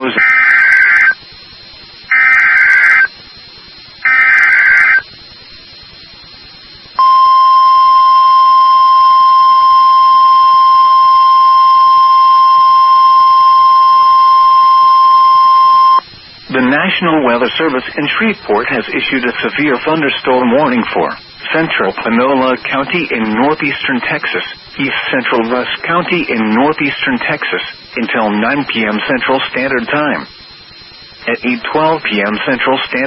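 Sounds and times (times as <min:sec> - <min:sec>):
digital header data bursts: 0:00.0 - 0:01.2, 0:02.1 - 0:03.2, 0:04.0 - 0:05.1, 0:07.0 - 0:33.0
steady warning alarm tone: 0:00.1 - 0:01.2, 0:02.1 - 0:03.2, 0:04.0 - 0:05.1, 0:07.0 - 0:16.1.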